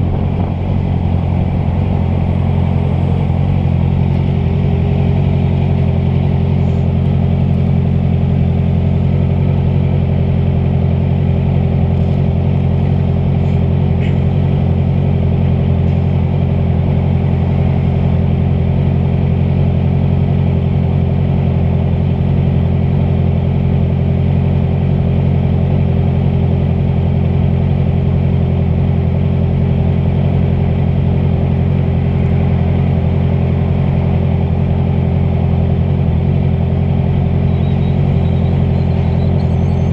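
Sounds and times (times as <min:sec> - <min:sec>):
rushing wind: 0:00.0 - 0:06.6
motorcycle engine cruising: 0:00.0 - 0:39.9
road noise: 0:00.0 - 0:39.9.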